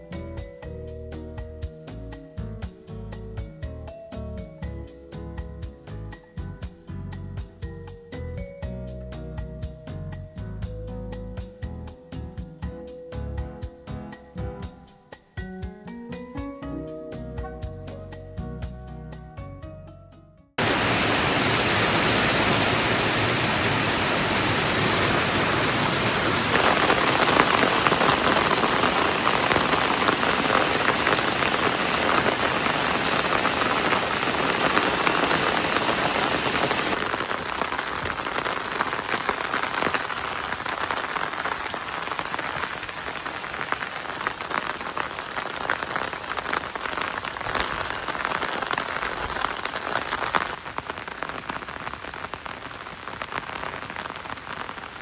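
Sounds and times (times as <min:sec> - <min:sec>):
heavy rain: 0:20.6 - 0:55.0.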